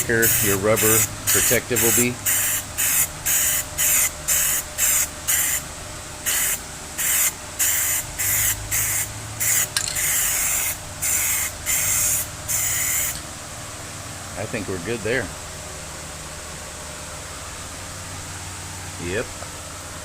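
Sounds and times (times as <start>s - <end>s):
aerosol can spraying: 0.2s - 5.6s, 6.3s - 13.2s.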